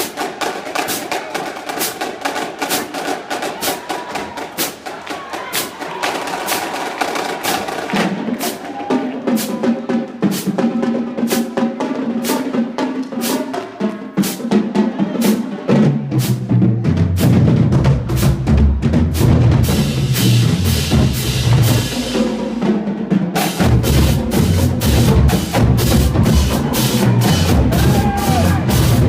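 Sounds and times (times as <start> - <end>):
sharp snare drum strokes: 0.0 - 8.7
pitched drums: 0.0 - 29.0
deep low drums: 15.7 - 29.0.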